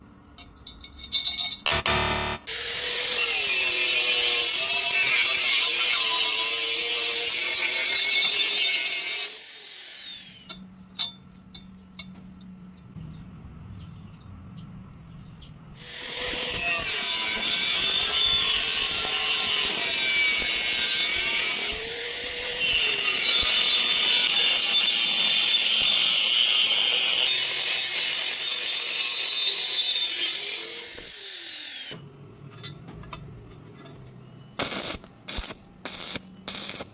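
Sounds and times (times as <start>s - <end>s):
power tool whining on metal: 1.7s - 10.6s, 15.8s - 32.0s.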